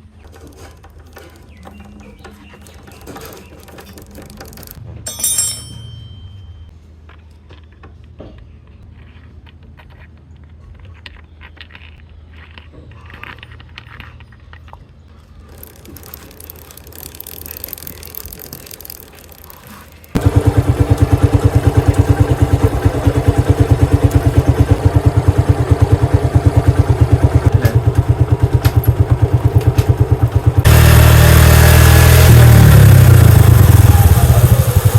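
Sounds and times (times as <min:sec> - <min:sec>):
motorcycle engine running: 0:15.5 - 0:34.9.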